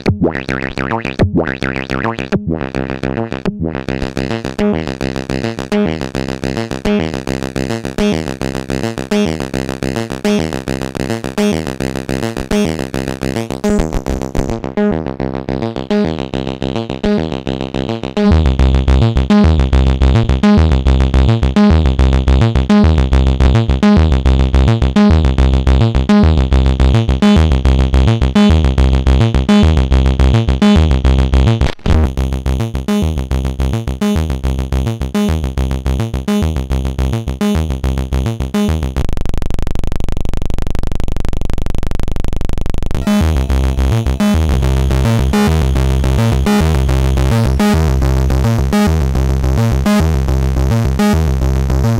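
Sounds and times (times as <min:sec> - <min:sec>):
synthesizer drone: 0:00.0 - 0:20.1, 0:43.0 - 0:51.9
distorted synthesizer pulsing pattern: 0:00.0 - 0:25.3, 0:42.9 - 0:51.9.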